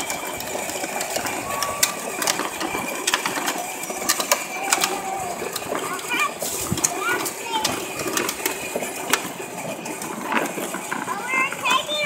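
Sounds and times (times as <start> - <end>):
clicks and rattles: 0.0 - 12.0
electric toy motor whirring: 0.0 - 12.0
plastic wheels rolling on road: 0.0 - 12.0.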